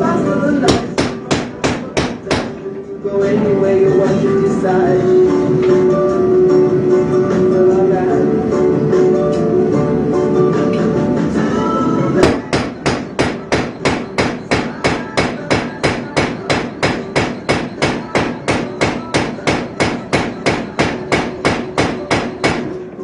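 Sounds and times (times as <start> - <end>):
hammer striking metal: 0.7 - 2.7, 12.2 - 22.8.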